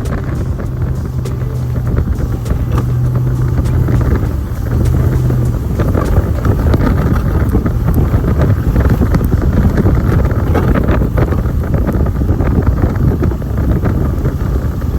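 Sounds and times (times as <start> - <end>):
wind buffeting microphone: 0.0 - 14.9.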